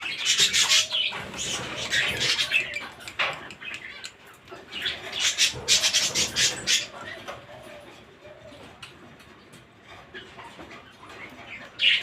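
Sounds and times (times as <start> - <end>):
cage birds chattering: 0.0 - 12.0.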